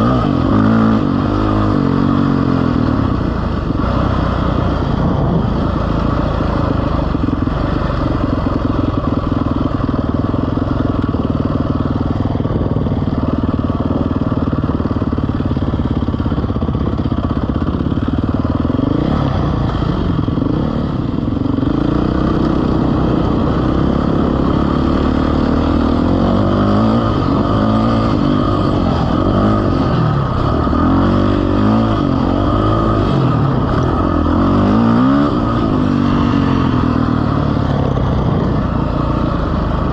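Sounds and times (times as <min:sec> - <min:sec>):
vehicle engine revving: 0:00.0 - 0:11.2, 0:17.7 - 0:39.9.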